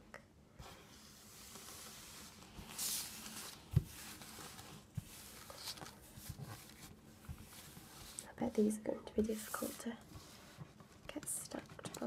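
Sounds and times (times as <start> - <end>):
playing cards sliding rustle: 0.6 - 8.3, 9.3 - 11.0.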